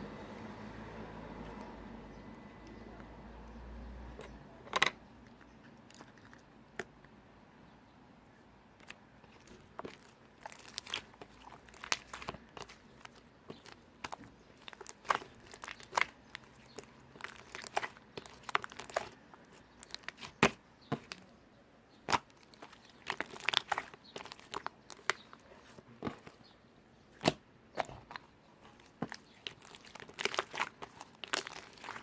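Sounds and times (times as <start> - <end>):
slime clicking and popping: 9.8 - 19.2.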